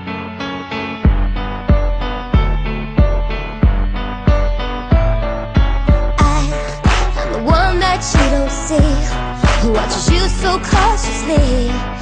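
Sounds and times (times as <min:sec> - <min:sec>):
sustained keyboard chords: 0:00.0 - 0:12.0
kick drum beat: 0:01.1 - 0:11.6.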